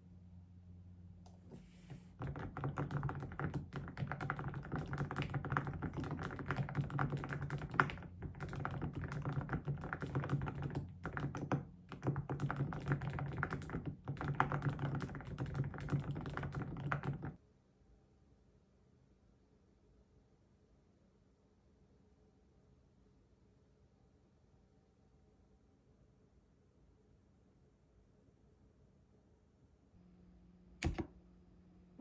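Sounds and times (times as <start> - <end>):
computer keyboard typing: 2.1 - 17.4, 30.8 - 31.1.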